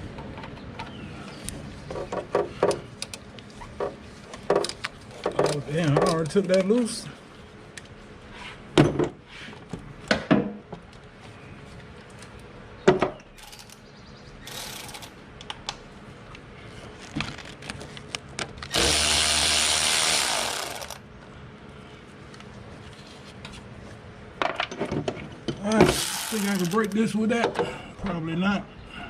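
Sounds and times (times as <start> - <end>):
electric ratchet running: 14.5 - 15.1, 18.7 - 21.0, 25.8 - 27.0.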